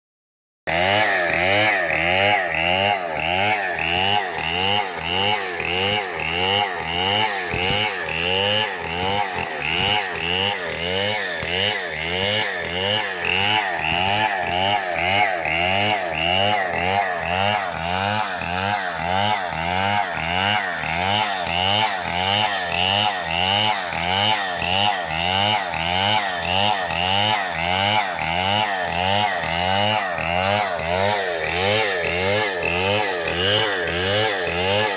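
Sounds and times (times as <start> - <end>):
chainsaw cutting wood: 0.7 - 34.9.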